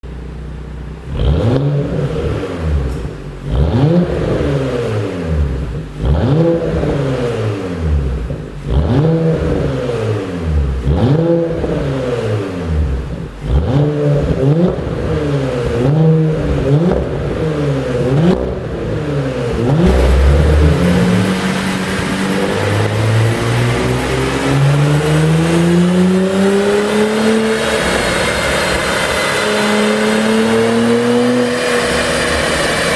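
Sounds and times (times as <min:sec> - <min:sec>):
car engine revving: 0:01.0 - 0:32.9
exhaust pops and crackles: 0:19.5 - 0:24.7.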